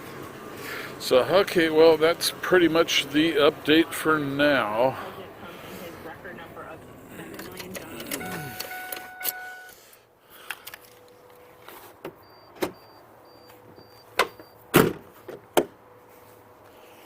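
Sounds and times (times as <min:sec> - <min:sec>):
short high beeps: 0:08.2 - 0:09.8.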